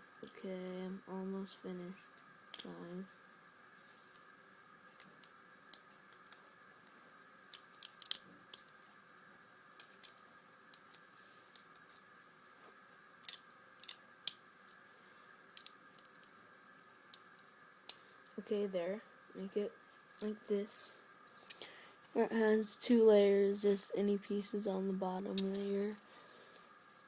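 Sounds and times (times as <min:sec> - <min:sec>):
faint steady hum: 0:00.0 - 0:27.0
plastic bricks clicking: 0:02.5 - 0:02.8, 0:05.0 - 0:06.4, 0:07.5 - 0:08.9, 0:09.8 - 0:12.1, 0:13.2 - 0:14.8, 0:15.5 - 0:16.4, 0:17.0 - 0:18.4.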